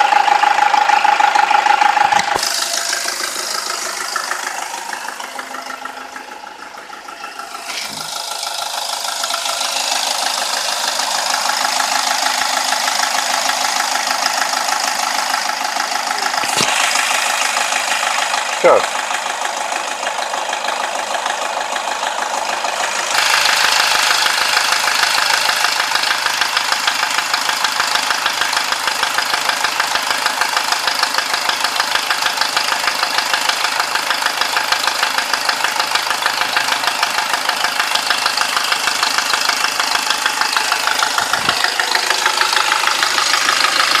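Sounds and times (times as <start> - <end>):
engine idling with clatter: 0.0 - 44.0.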